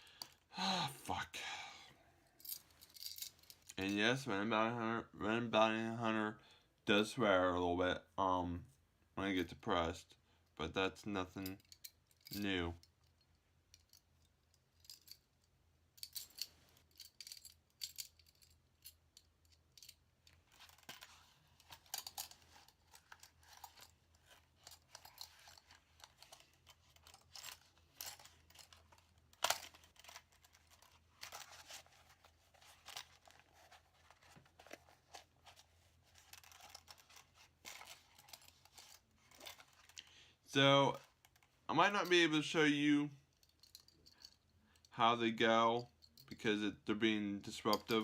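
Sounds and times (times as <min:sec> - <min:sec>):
handcuffs clicking and scraping: 0:02.2 - 0:03.9, 0:11.4 - 0:40.1, 0:43.3 - 0:44.9, 0:47.6 - 0:48.0.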